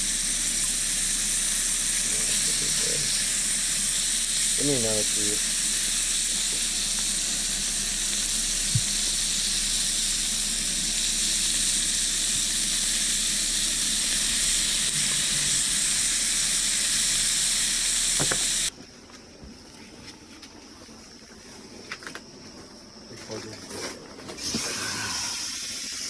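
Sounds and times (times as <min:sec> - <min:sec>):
bacon sizzling in a frying pan: 0:03.2 - 0:18.7.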